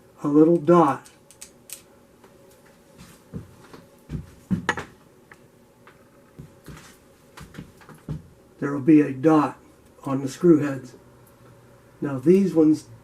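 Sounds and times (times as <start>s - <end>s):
tools knocking and clicking: 4.6s - 4.9s.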